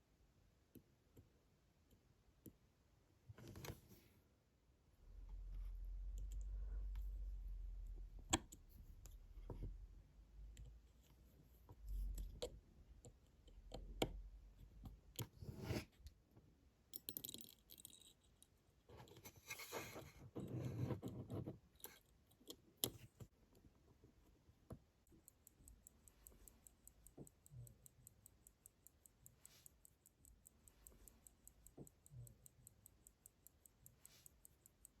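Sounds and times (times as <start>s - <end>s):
pocket watch ticking: 25.0s - 35.0s.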